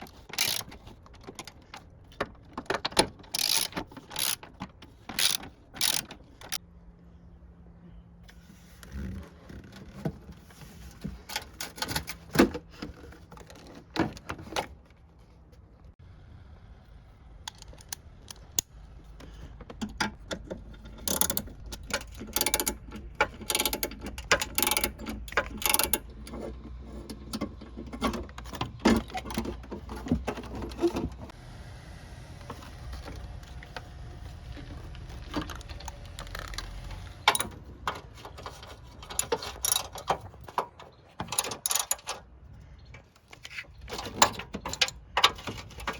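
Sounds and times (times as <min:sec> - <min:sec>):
hand tools clicking: 0:00.3 - 0:00.8, 0:03.3 - 0:04.4, 0:05.1 - 0:06.6.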